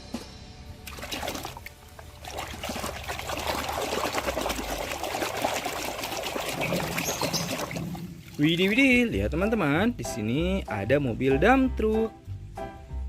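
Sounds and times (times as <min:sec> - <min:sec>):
water pouring and trickling: 0:00.8 - 0:09.2.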